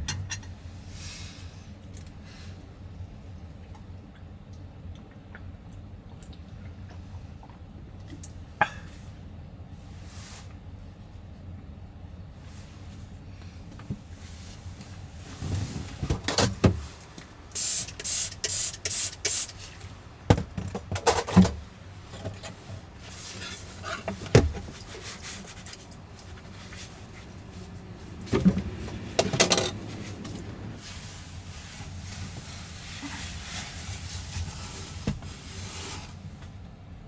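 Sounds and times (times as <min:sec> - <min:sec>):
short hissing bursts: 0:17.6 - 0:19.6
handling knocks and clicks: 0:28.1 - 0:30.6.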